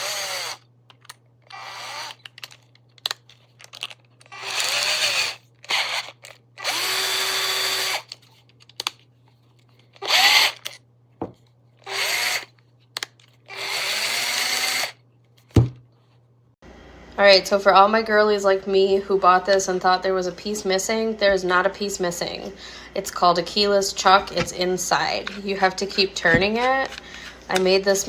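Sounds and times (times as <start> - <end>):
cordless drill motor bursts: 0.0 - 0.6, 1.5 - 2.2, 4.3 - 8.1, 10.0 - 10.6, 11.8 - 12.5, 13.5 - 15.0
thump: 15.6 - 15.8.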